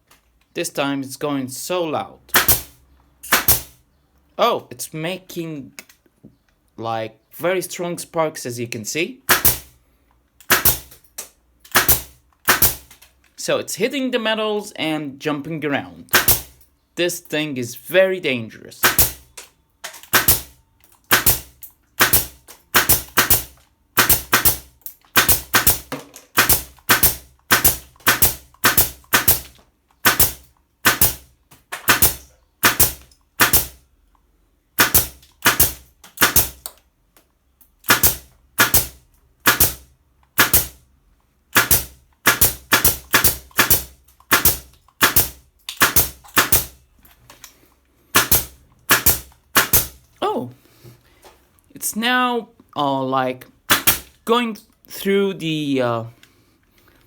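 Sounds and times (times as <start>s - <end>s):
nails striking metal: 2.3s - 3.8s, 9.3s - 9.8s, 10.4s - 13.0s, 16.1s - 16.7s, 18.8s - 33.8s, 34.8s - 36.8s, 37.8s - 40.8s, 41.5s - 46.8s, 48.1s - 50.1s, 53.7s - 54.2s
pneumatic nail gun firing: 2.3s - 3.8s, 9.3s - 9.8s, 10.4s - 11.1s, 11.7s - 13.0s, 16.1s - 16.6s, 18.8s - 33.8s, 34.8s - 36.7s, 37.8s - 40.8s, 41.5s - 46.8s, 48.1s - 50.0s, 53.7s - 54.1s.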